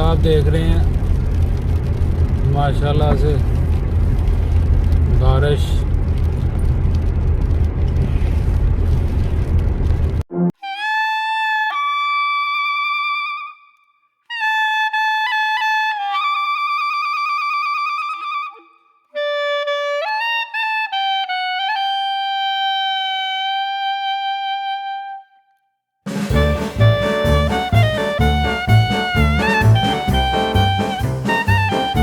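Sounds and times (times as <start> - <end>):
solo wind instrument melody: 10.3 - 13.7, 14.3 - 25.5, 26.1 - 32.0.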